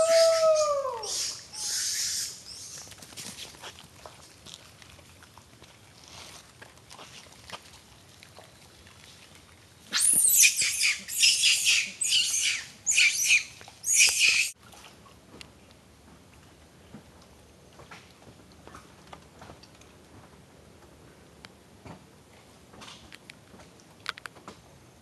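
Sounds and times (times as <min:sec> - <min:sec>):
animal squawking calls: 0:00.0 - 0:02.8, 0:09.9 - 0:14.5.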